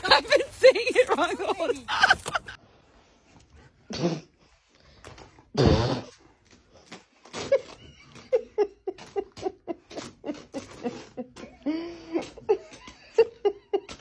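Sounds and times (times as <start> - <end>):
person laughing: 0.0 - 2.6.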